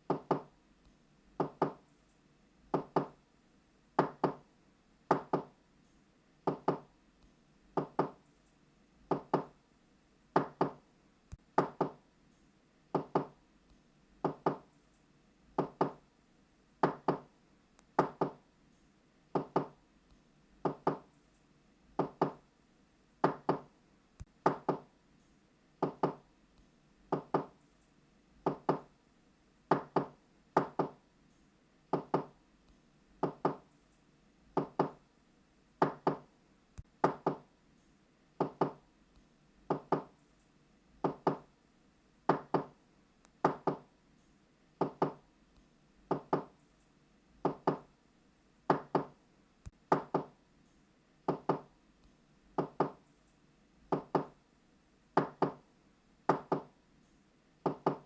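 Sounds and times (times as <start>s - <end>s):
knuckles knocking on a door: 0.1s - 0.5s, 1.4s - 1.8s, 2.7s - 3.2s, 4.0s - 4.4s, 5.1s - 5.5s, 6.5s - 6.9s, 7.8s - 8.2s, 9.1s - 9.5s, 10.4s - 10.8s, 11.6s - 12.0s, 12.9s - 13.4s, 14.2s - 14.6s, 15.6s - 16.0s, 16.8s - 17.3s, 18.0s - 18.4s, 19.4s - 19.8s, 20.6s - 21.0s, 22.0s - 22.4s, 23.2s - 23.7s, 24.4s - 24.9s, 25.8s - 26.2s, 27.1s - 27.5s, 28.4s - 28.9s, 29.7s - 31.0s, 31.9s - 32.3s, 33.2s - 33.6s, 34.6s - 35.0s, 35.8s - 36.2s, 37.0s - 37.4s, 38.4s - 38.8s, 39.7s - 40.1s, 41.0s - 41.4s, 42.3s - 42.7s, 43.4s - 43.8s, 44.8s - 45.2s, 46.1s - 46.5s, 47.4s - 47.8s, 48.7s - 49.1s, 51.3s - 51.7s, 52.6s - 53.0s, 53.9s - 54.3s, 55.2s - 55.6s, 56.3s - 56.7s, 57.6s - 58.0s.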